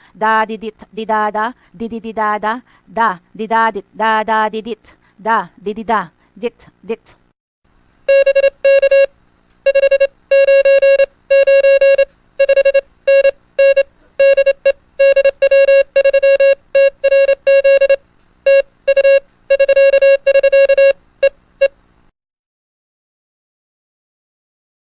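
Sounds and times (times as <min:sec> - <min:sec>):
morse code beeps: 0:08.1 - 0:09.1, 0:09.7 - 0:21.8.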